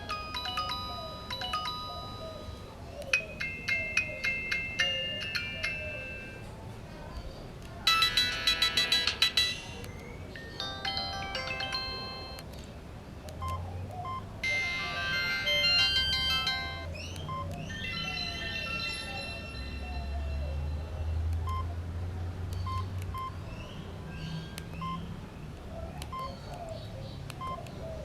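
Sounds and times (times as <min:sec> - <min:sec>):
phone ringtone melodies: 0:00.0 - 0:06.6, 0:07.8 - 0:12.5, 0:14.1 - 0:20.9.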